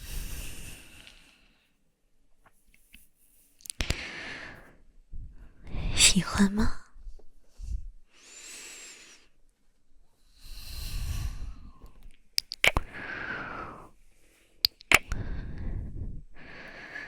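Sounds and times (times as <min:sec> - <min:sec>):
woman breathing: 0:00.0 - 0:01.8, 0:03.8 - 0:06.6, 0:07.4 - 0:09.4, 0:10.3 - 0:12.0, 0:12.8 - 0:17.0
sharp clicks: 0:12.4 - 0:12.9, 0:14.6 - 0:15.2.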